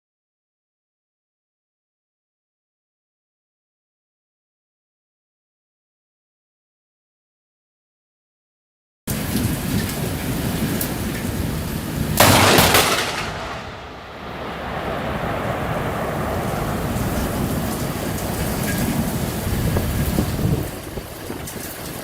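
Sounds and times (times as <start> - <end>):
heavy rain pouring: 9.1 - 22.0
loud thunder crack: 12.2 - 20.8.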